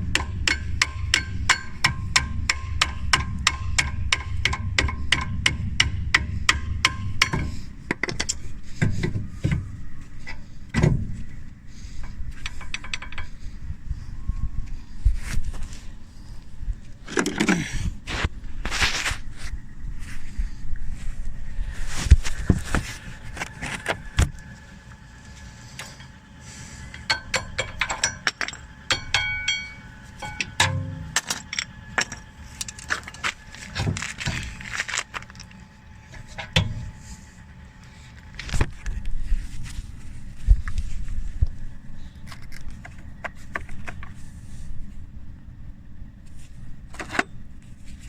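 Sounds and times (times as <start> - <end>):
metal tools clinking: 26.9 - 33.2
ringing metallic clinks: 27.0 - 32.2.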